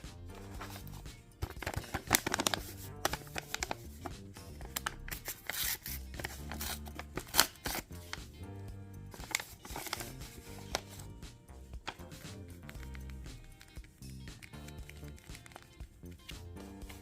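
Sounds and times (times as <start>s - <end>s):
background music: 0.0s - 17.0s
paper rustling and crinkling: 0.3s - 7.9s, 9.1s - 11.1s
sharp snips and taps: 11.9s - 17.0s.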